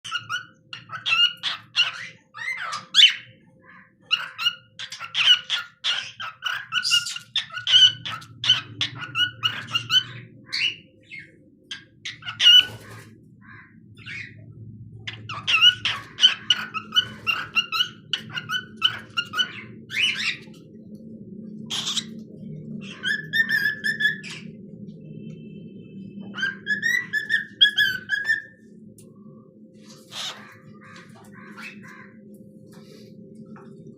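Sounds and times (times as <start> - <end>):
cockatiel chirping: 4.1 - 11.2, 15.3 - 20.5, 21.7 - 22.1, 22.8 - 24.5, 26.3 - 28.5
cockatiel whistling song: 22.8 - 24.5, 26.2 - 28.6.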